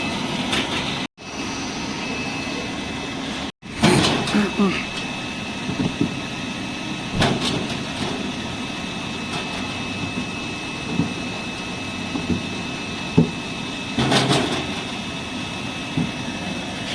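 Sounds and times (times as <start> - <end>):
washing machine running: 0.0 - 16.9.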